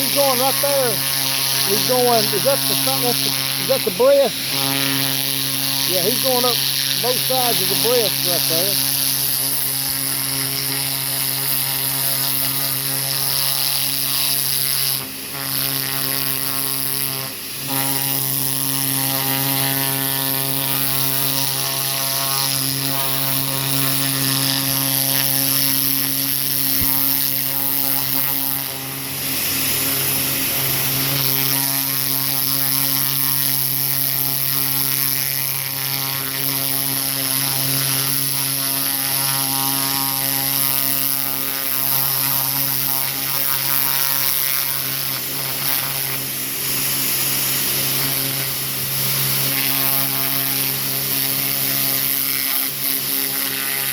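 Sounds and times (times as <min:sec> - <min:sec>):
water jet hissing: 0:00.0 - 0:09.2
pressure washer pump drone: 0:00.0 - 0:53.9.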